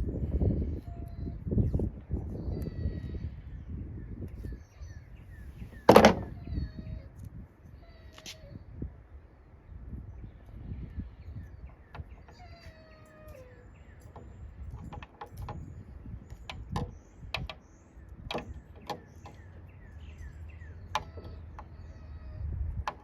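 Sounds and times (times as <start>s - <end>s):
dog whining: 6.2s - 7.2s, 12.1s - 14.0s, 21.0s - 22.5s.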